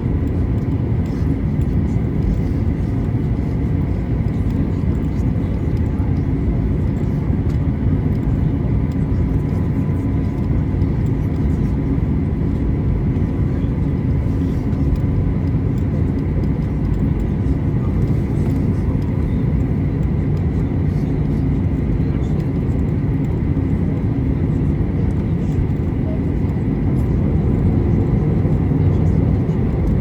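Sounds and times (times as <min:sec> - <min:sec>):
aircraft cabin engine rumble: 0:00.0 - 0:30.0.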